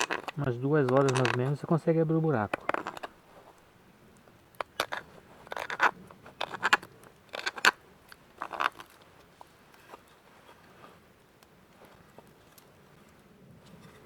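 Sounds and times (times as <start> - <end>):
knife scraping wooden cup: 0.0 - 1.4, 4.6 - 7.8.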